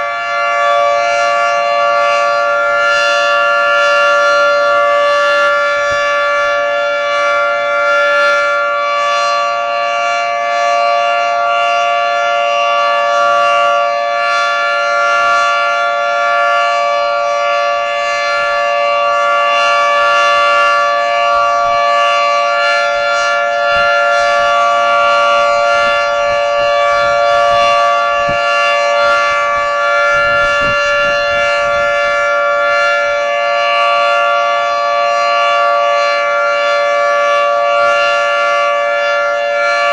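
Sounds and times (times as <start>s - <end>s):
three-tone warning siren: 0.0s - 39.9s.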